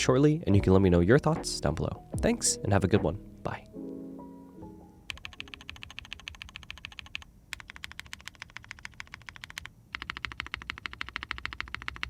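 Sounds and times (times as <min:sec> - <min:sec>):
fast typing on mechanical keyboard: 0:05.1 - 0:12.0.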